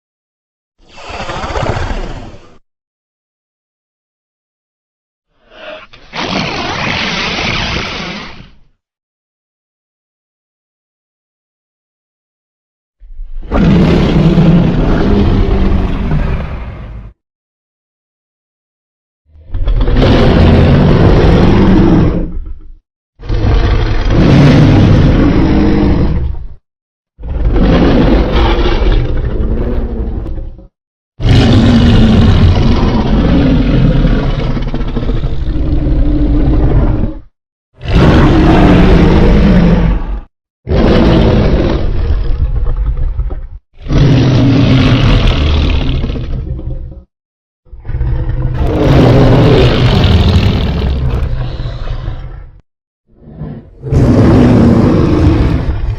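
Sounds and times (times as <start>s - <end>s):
harsh monster roars: 13.4s - 17.2s, 19.4s - 22.6s, 23.2s - 26.4s, 27.2s - 30.3s, 31.2s - 43.2s, 43.8s - 46.8s, 47.7s - 55.9s.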